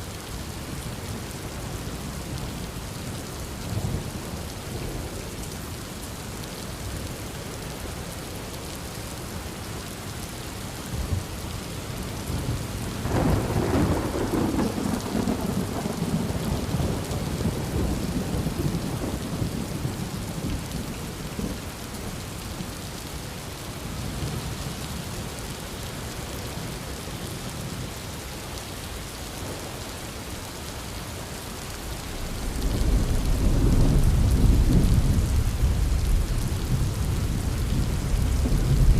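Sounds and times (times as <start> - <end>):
heavy rain: 0.0 - 38.9
thunder crack and rumble: 13.0 - 20.8, 32.0 - 38.9.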